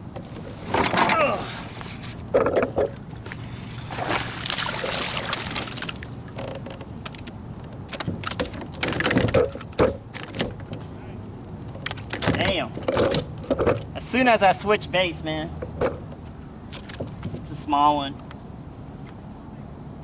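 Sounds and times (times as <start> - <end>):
water splashing around kayak: 3.3 - 6.3
sharp knocks and clicks: 6.3 - 10.9, 11.7 - 14.0, 15.6 - 17.5.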